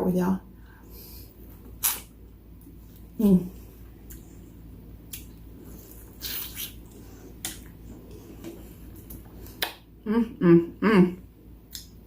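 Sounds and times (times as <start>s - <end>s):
low room hum: 0.0s - 12.0s
person chewing: 3.9s - 9.8s.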